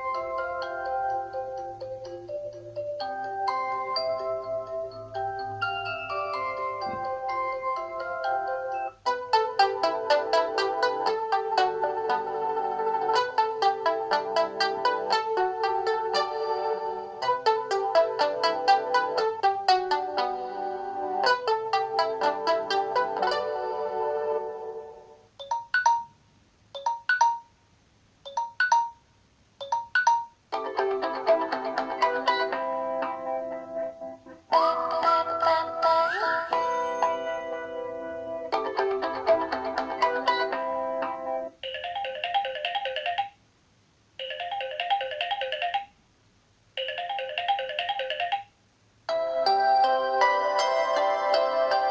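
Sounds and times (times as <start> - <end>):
melodic ringtone: 0.0 - 26.2, 26.8 - 27.6, 28.3 - 33.7, 34.5 - 43.4, 44.2 - 45.9, 46.8 - 48.5, 49.1 - 51.9
electronic ringtone phrase: 25.4 - 26.2, 26.8 - 27.5, 28.3 - 29.0, 29.6 - 30.4, 41.6 - 43.4, 44.2 - 45.9, 46.8 - 48.5
electronic two-note chime ringtone: 25.4 - 26.2, 26.8 - 27.5, 28.3 - 29.0, 29.6 - 30.4, 36.5 - 37.9
plucked-string ringtone: 25.4 - 26.2, 26.8 - 27.5, 28.3 - 29.0, 29.6 - 33.2, 36.5 - 40.6, 41.6 - 43.4, 46.8 - 48.5.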